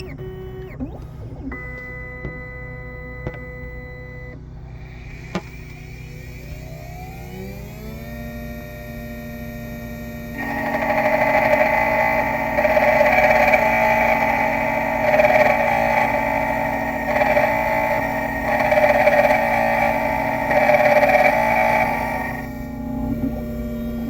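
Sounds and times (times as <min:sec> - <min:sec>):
key machine motor whine: 0:00.0 - 0:24.0
cutter grinding metal: 0:09.8 - 0:24.0.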